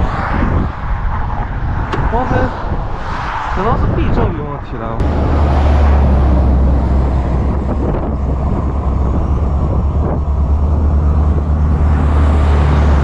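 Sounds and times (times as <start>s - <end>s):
vehicle engine low rumble: 3.8s - 13.0s.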